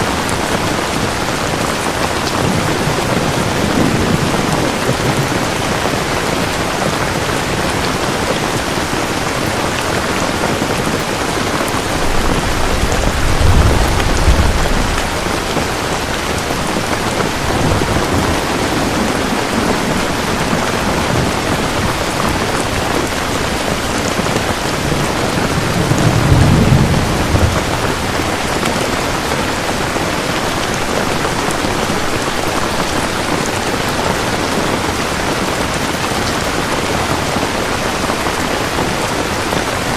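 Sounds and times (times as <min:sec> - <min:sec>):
heavy rain falling: 0:00.0 - 0:39.9
low rolls of thunder: 0:02.3 - 0:06.6, 0:11.3 - 0:24.2, 0:24.8 - 0:29.3.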